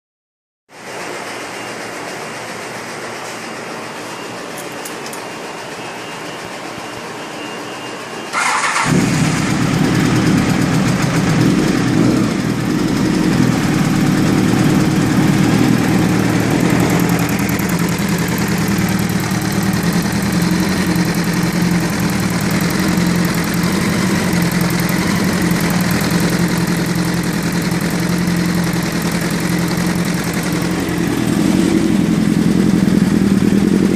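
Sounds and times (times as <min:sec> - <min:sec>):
motorcycle engine idling: 0:08.3 - 0:33.9
motorcycle engine cranking: 0:08.4 - 0:11.5, 0:13.3 - 0:33.9.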